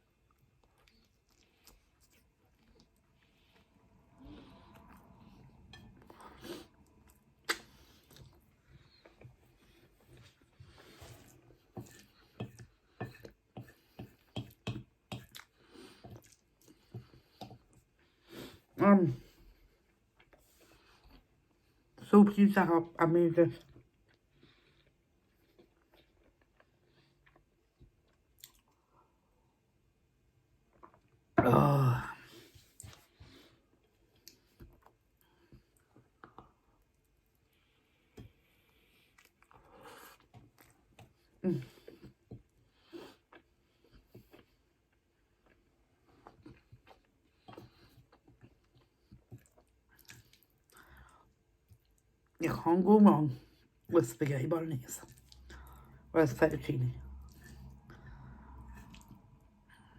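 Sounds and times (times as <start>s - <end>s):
wet mouth chewing smacks: 6.2s - 8.4s, 46.2s - 50.8s, 58.6s - 59.2s.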